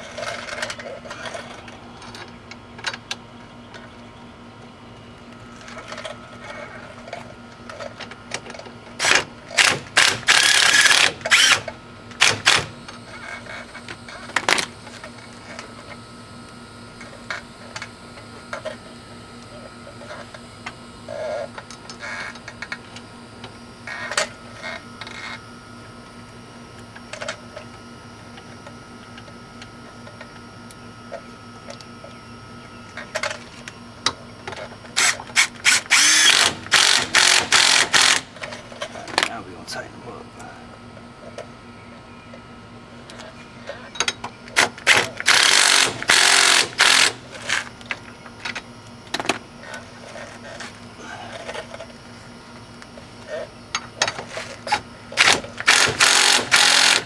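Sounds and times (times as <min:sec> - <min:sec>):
ratchet wrench ratcheting: 0:35.0 - 0:38.3, 0:44.9 - 0:47.2, 0:55.2 - 0:57.0.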